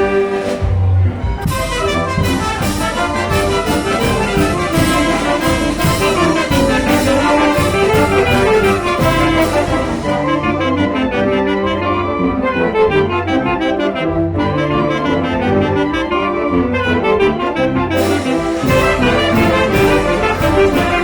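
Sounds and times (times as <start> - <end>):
brass band playing: 0.0 - 21.0
cymbal and drum strokes: 1.4 - 10.3, 18.0 - 21.0.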